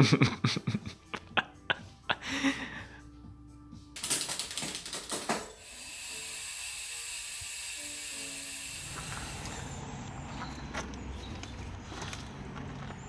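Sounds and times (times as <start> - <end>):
rapid ratchet-like clicking: 4.0 - 9.8
steady hiss: 4.8 - 9.9.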